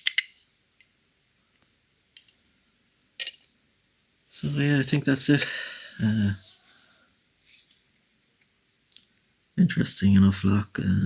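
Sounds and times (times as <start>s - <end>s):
faint metal lock parts clicking: 0.0s - 0.4s.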